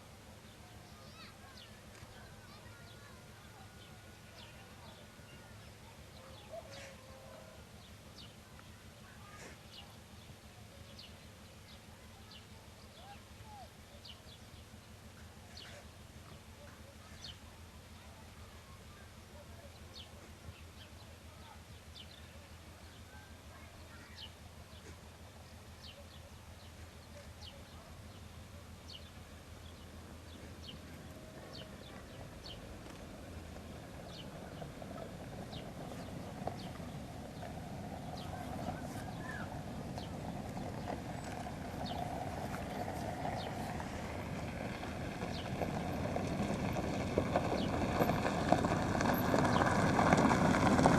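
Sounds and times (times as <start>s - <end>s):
birds chirping: 0.0s - 50.9s
low steady rumble: 0.0s - 50.9s
rough noise: 29.8s - 50.9s.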